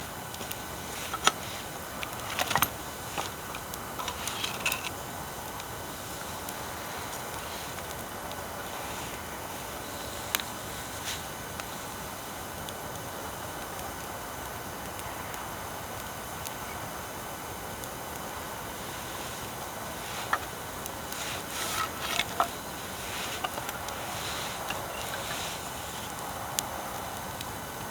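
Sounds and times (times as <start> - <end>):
wood fire crackling: 0.0 - 27.9.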